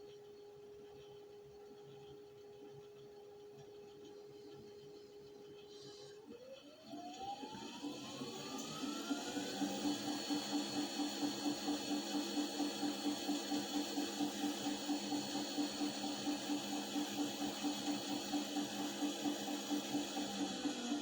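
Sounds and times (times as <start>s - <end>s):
washing machine motor hum: 4.4s - 21.0s
rhythmic pulsing noise: 7.5s - 21.0s.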